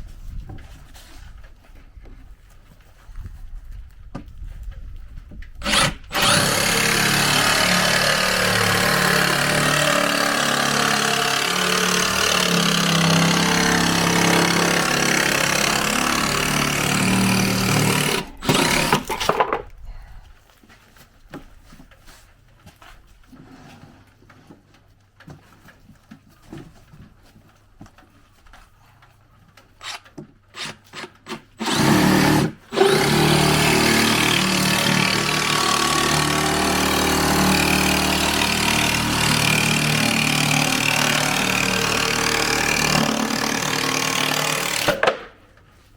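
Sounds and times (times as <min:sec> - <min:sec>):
reciprocating saw cutting plywood: 0:05.6 - 0:19.3, 0:30.6 - 0:45.3.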